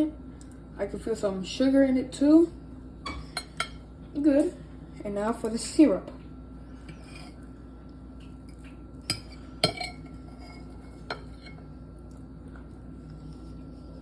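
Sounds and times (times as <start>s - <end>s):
cutlery clinking on a plate: 9.0s - 11.6s.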